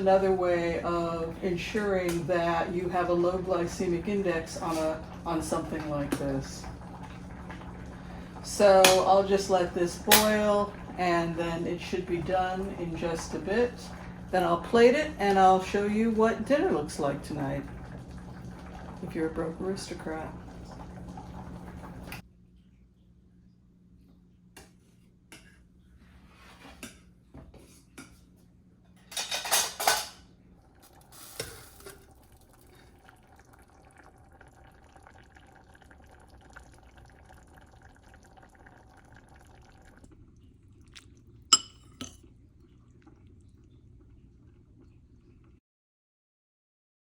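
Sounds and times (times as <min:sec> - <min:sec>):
faint steady hum: 0:00.0 - 0:45.6
pots and dishes clattering: 0:28.9 - 0:30.3, 0:41.5 - 0:42.2.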